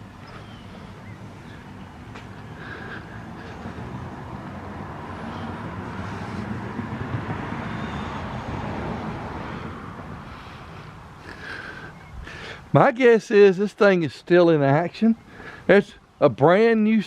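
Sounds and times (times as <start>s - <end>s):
vehicle passing by: 0.0s - 11.9s.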